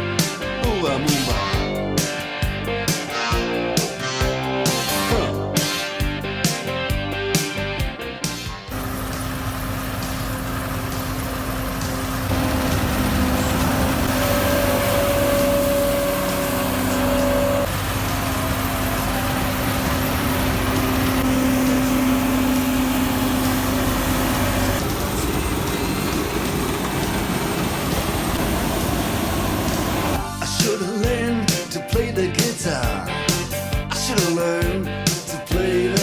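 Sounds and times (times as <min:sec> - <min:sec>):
farm machine engine droning: 0:08.7 - 0:30.2.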